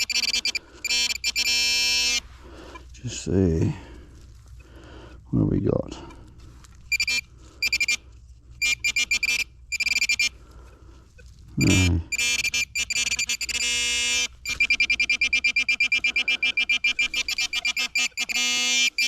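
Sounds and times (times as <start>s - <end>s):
metal detector beeping: 0.0s - 2.3s, 6.9s - 10.4s, 11.6s - 19.0s
low grunt-like voice: 11.6s - 12.1s.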